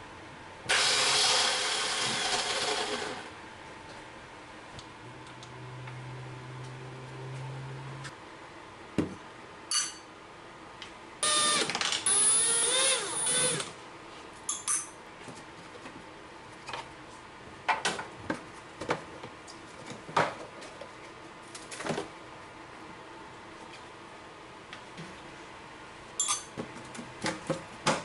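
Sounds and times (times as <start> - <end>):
electric motor whirring: 11.2 - 13.7.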